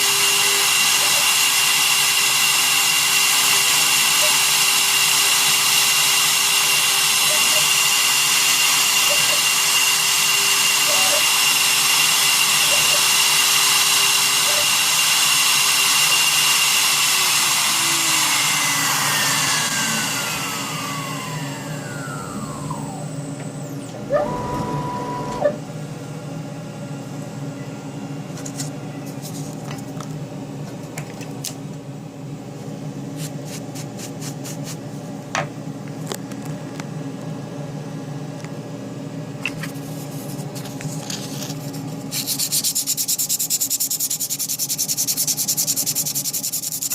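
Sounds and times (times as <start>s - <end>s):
spindle motor whining: 0.0s - 25.7s
brief tone: 7.3s - 7.7s, 24.1s - 25.6s, 27.5s - 27.9s.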